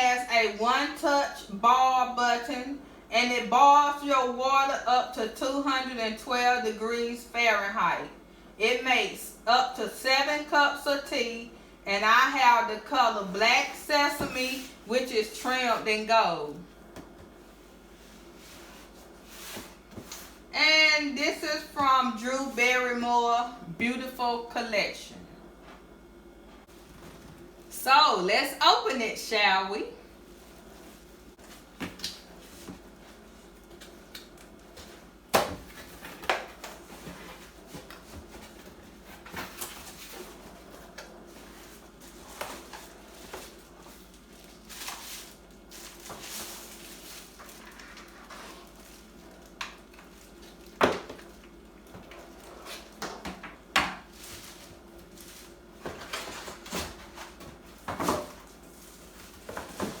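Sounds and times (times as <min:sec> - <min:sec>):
faint steady hum: 0:00.0 - 1:00.0
packaging rustling: 0:41.3 - 0:53.0.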